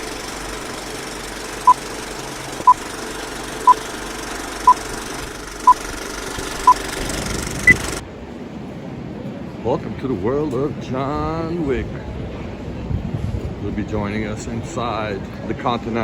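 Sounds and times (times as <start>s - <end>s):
short electronic beeps: 7.6s - 8.0s.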